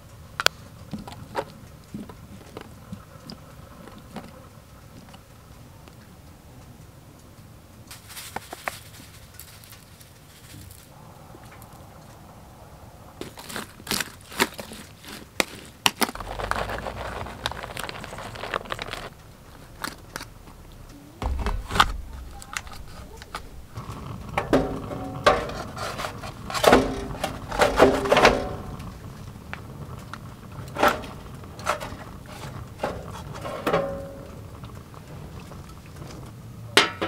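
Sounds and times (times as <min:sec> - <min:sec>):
metal cookware clinking: 0:24.3 - 0:28.8.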